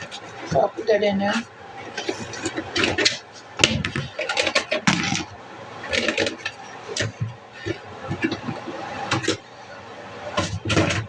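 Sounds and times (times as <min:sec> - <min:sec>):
dishes clattering: 0:01.8 - 0:05.3.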